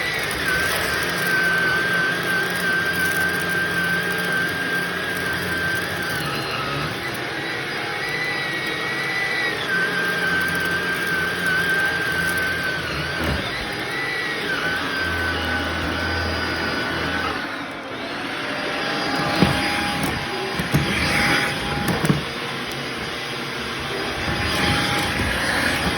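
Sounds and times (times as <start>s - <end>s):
vacuum cleaner on a rug: 0.0s - 25.9s.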